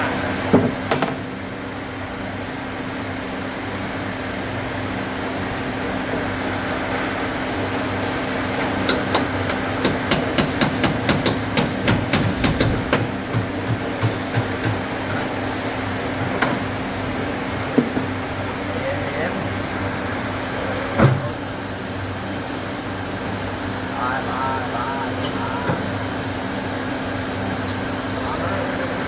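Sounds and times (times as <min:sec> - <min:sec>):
workshop hum: 0:00.0 - 0:29.0
hammer tapping on metal: 0:08.8 - 0:14.9.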